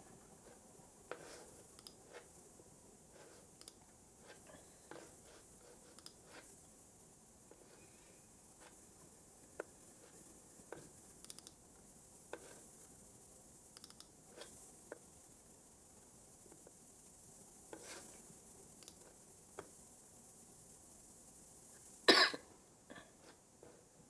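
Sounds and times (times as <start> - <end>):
quiet steady hiss: 0.0 - 24.0
keyboard and mouse clicks: 1.8 - 2.0, 3.6 - 3.8, 5.9 - 6.2, 11.2 - 11.6, 13.8 - 14.1.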